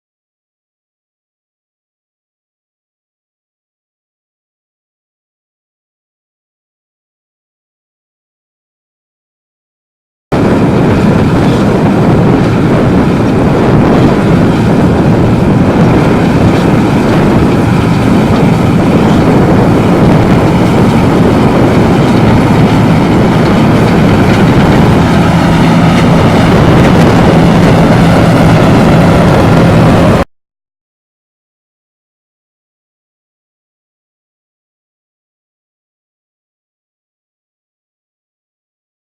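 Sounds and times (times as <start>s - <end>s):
harvest machinery running: 10.4s - 30.2s.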